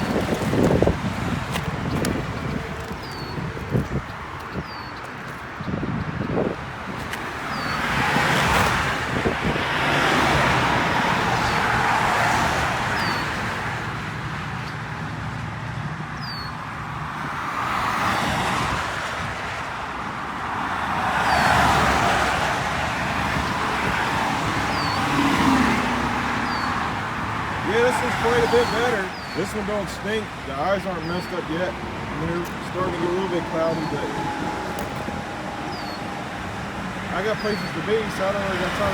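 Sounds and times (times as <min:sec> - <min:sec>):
cars passing by: 0:00.0 - 0:38.9.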